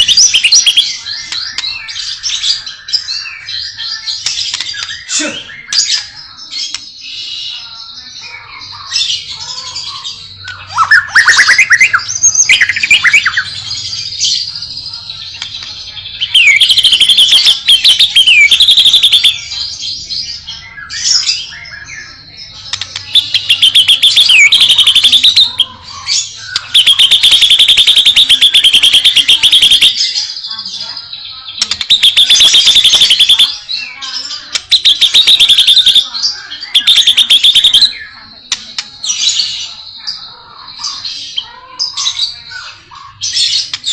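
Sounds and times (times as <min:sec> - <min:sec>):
bird singing whistles and trills: 0:00.0 - 0:07.8, 0:10.2 - 0:13.6, 0:15.4 - 0:30.4, 0:31.6 - 0:39.7.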